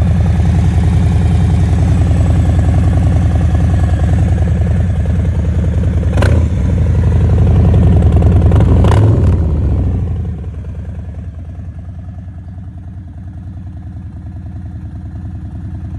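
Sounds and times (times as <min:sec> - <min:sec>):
motorcycle engine running: 0:00.0 - 0:15.9.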